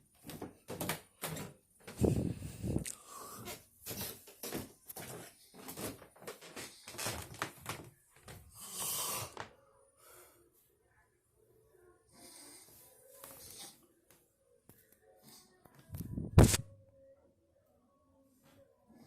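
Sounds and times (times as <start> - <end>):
loud snoring: 8.5 - 9.4.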